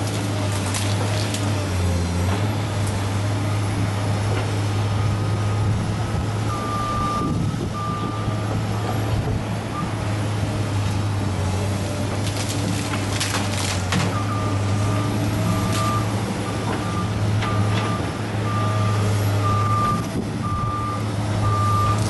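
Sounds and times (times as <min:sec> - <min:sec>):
diesel machinery engine drone: 0:00.0 - 0:22.0
reversing alarm beeping: 0:06.5 - 0:08.5, 0:14.2 - 0:22.0.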